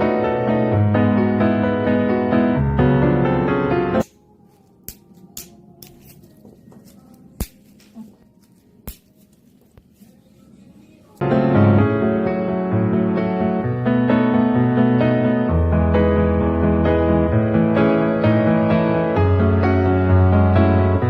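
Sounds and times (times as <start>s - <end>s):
piano music: 0.0s - 4.6s, 11.2s - 21.0s.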